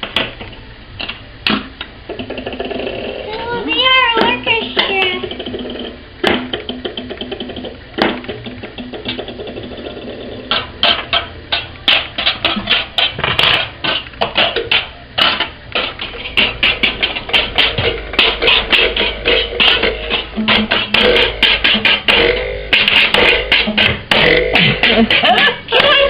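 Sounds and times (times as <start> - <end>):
kitchen utensils tapping and clattering: 6.2 - 26.0.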